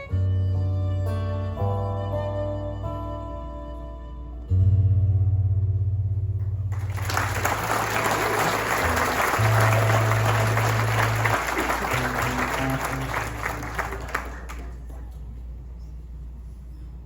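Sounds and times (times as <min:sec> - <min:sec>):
guitar: 0:00.0 - 0:16.8
audience applause: 0:06.7 - 0:15.1.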